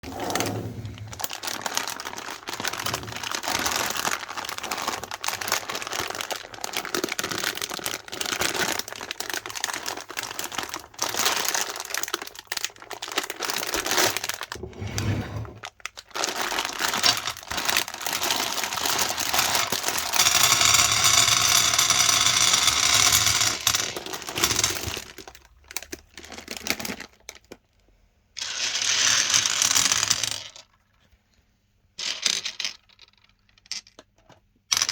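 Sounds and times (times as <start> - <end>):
candies crinkling and crackling: 0.0 - 14.7, 15.5 - 27.6.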